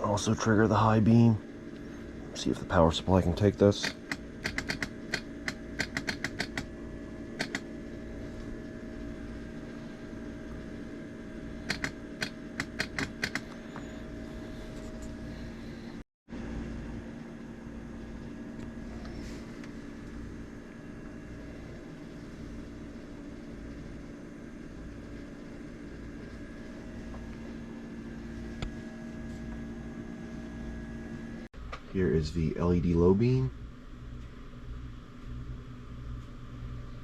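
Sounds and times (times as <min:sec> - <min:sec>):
electrical bench hum: 0:00.0 - 0:37.0
quick sharp clicks: 0:03.8 - 0:06.7, 0:07.4 - 0:07.7, 0:11.7 - 0:13.5.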